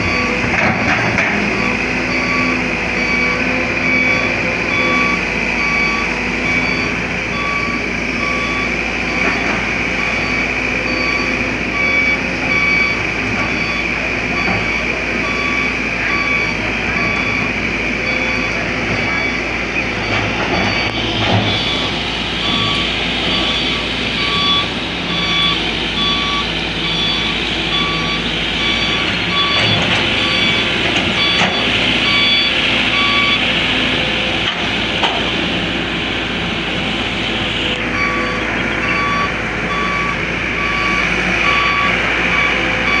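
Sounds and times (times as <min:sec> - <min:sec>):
excavator engine running: 0:00.0 - 0:43.0
warning alarm beeping: 0:00.0 - 0:43.0.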